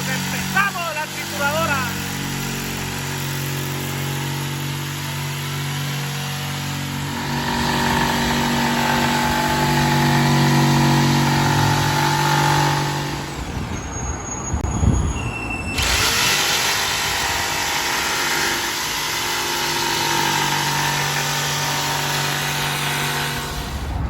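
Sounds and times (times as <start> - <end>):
engine running: 0.0 - 13.8.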